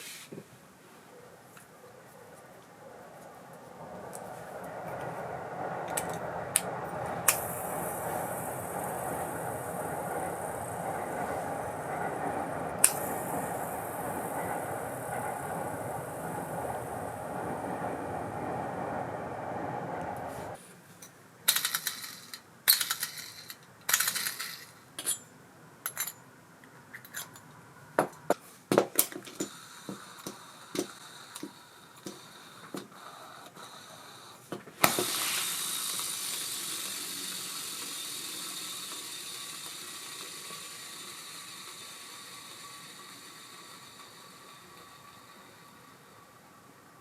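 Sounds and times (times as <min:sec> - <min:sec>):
fishing reel spool whirring: 0:04.4 - 0:20.6, 0:34.9 - 0:46.5.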